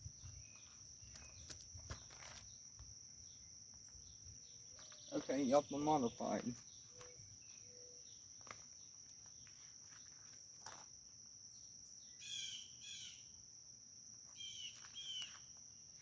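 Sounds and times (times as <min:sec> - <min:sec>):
crickets trilling: 0:00.0 - 0:16.0
bird chirping: 0:03.2 - 0:09.7, 0:11.5 - 0:13.3, 0:14.3 - 0:15.5.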